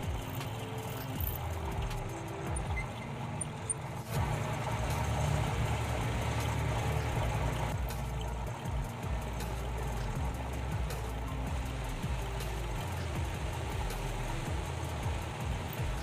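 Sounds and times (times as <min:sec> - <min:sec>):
motor humming: 0:00.0 - 0:16.0.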